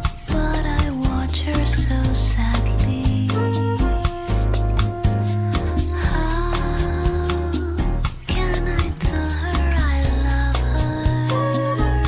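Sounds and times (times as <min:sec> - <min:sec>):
melodic music over steady beat: 0:00.0 - 0:12.0.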